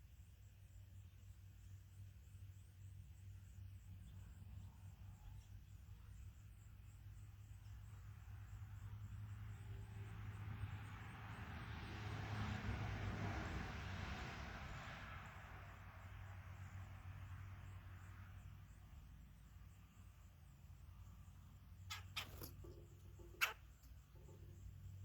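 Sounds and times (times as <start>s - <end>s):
vehicle passing: 9.9s - 18.7s.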